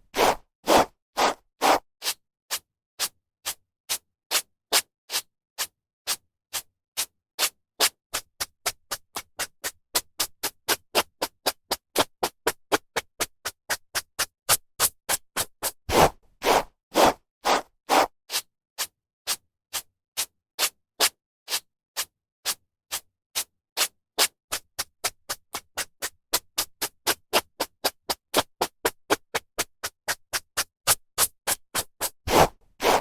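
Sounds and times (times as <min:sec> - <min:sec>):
hairbrush swishing through hair: 0:00.2 - 0:01.8, 0:15.9 - 0:18.1, 0:32.3 - 0:33.0.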